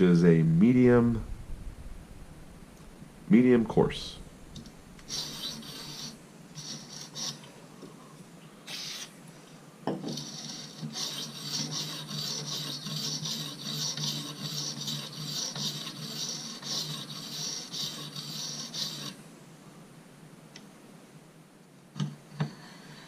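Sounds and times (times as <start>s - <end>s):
sharpening stone scraping knife blade: 5.1s - 7.4s, 10.2s - 19.2s.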